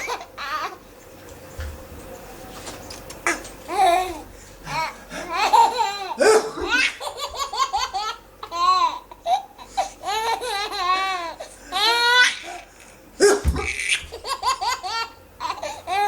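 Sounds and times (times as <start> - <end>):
baby laughing loudly: 4.8 - 12.5, 13.3 - 16.0
baby sneezing: 6.2 - 6.9.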